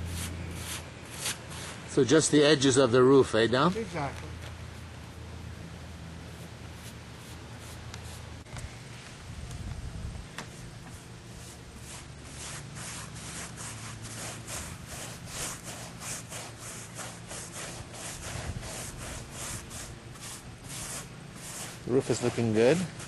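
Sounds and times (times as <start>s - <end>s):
paintbrush bristle strokes: 6.3s - 8.2s, 10.9s - 23.0s.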